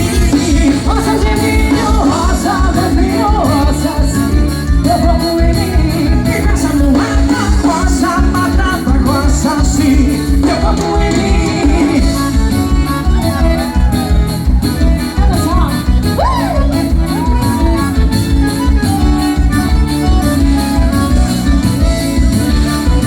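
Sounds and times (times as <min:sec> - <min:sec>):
forro band music: 0:00.0 - 0:23.0.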